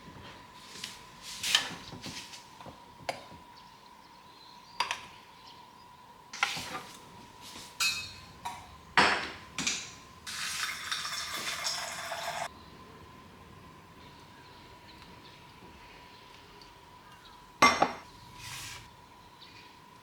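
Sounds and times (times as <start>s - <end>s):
dishes and utensils clinking: 7.6s - 12.5s, 17.6s - 18.1s.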